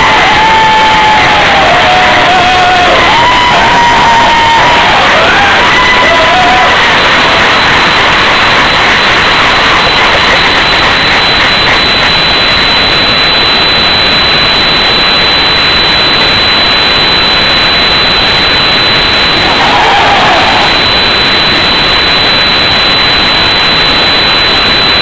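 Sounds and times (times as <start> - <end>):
distorted audience applause: 0.0 - 14.0, 19.2 - 22.2.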